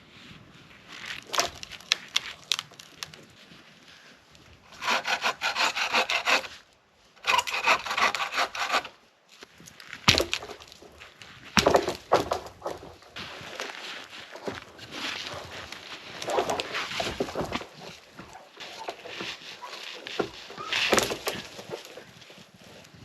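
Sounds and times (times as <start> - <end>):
wood knocking and snapping: 1.2 - 3.2, 10.0 - 11.0, 11.6 - 13.7, 15.7 - 22.1
hand saw cutting wood: 4.7 - 6.6, 7.2 - 9.0, 14.8 - 22.0.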